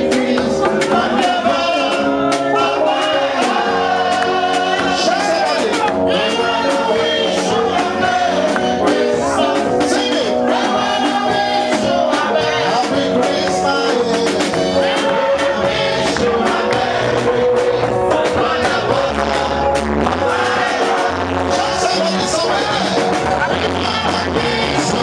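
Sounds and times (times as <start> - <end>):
upbeat music with singing: 0.0 - 25.0.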